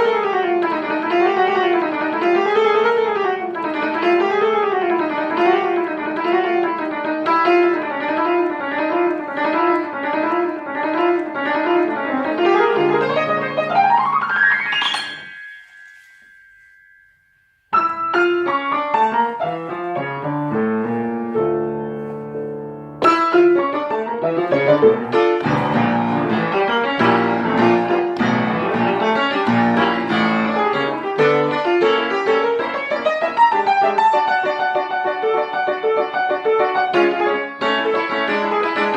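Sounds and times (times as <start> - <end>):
piano music: 0.0 - 38.9.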